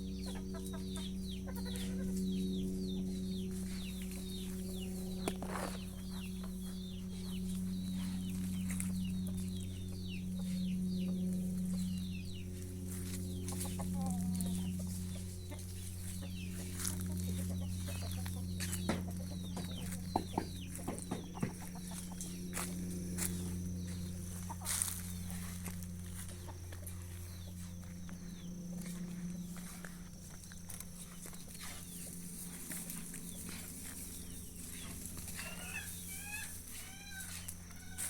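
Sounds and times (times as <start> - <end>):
chickens calling: 0.0 - 38.0
steady low hum: 0.0 - 38.0
sharp knocks: 18.8 - 21.6.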